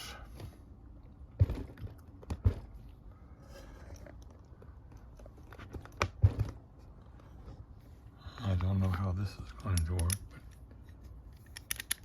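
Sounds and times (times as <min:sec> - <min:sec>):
padlock metal clicks and knocks: 0:09.5 - 0:10.7, 0:11.4 - 0:12.0.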